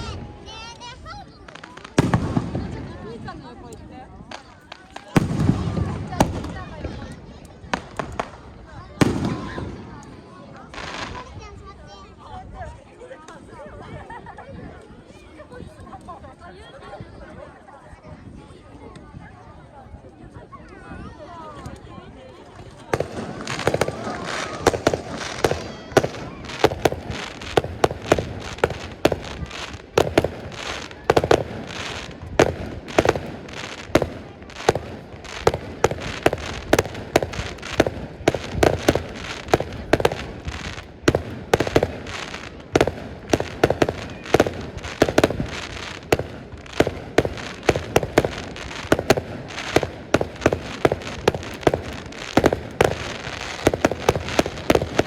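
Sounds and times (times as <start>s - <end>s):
fireworks crackling: 0.0s - 16.2s, 21.5s - 55.0s
firework shells bursting: 22.9s - 55.0s.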